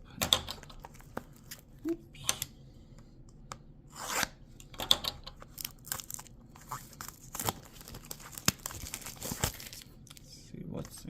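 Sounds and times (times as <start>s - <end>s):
packaging rustling and tearing: 5.5s - 11.0s.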